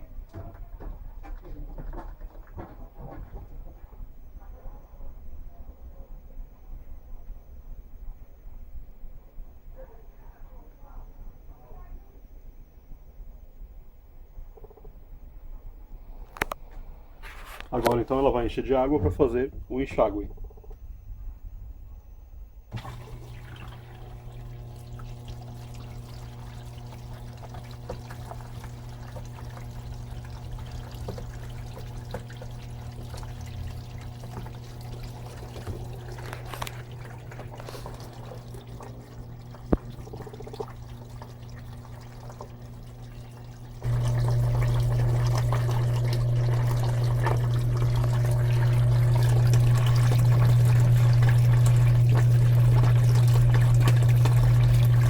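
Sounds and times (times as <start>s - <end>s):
washing machine hum: 0.0s - 12.2s, 12.9s - 55.0s
water pouring into tub: 22.7s - 55.0s.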